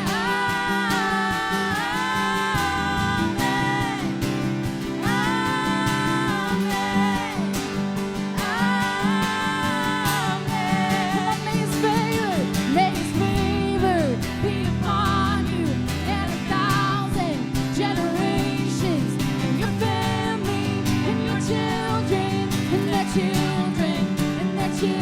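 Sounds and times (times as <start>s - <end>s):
worship band music: 0.0s - 12.8s.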